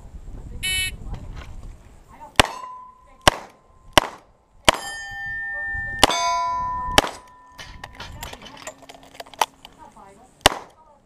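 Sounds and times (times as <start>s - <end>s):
steel target plate ringing: 2.4s - 3.2s, 4.7s - 8.2s.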